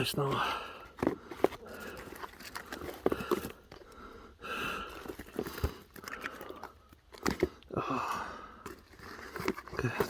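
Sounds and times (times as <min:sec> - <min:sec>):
rustling: 0:00.9 - 0:04.0, 0:08.6 - 0:10.0.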